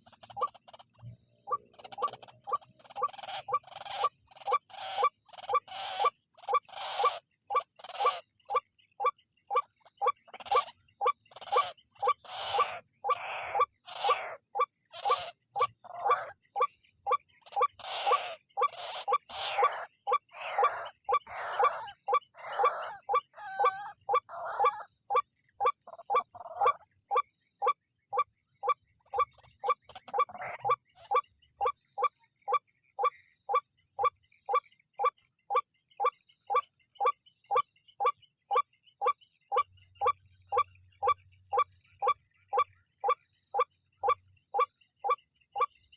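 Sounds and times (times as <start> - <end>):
waterhen calling: 1.4 - 8.6, 9.5 - 31.8.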